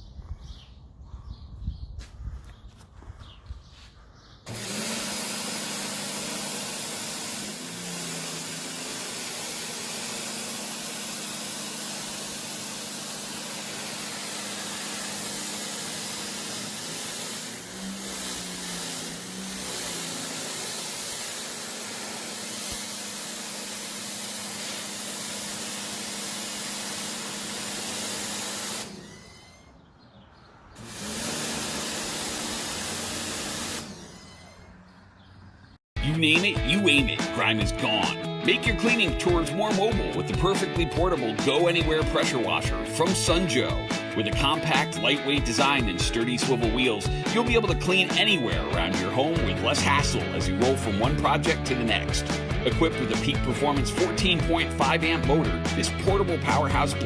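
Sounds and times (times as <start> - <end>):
pressure washer water jet hiss: 4.5 - 29.0, 30.8 - 33.9
pump motor hum: 4.5 - 29.8, 30.8 - 34.8.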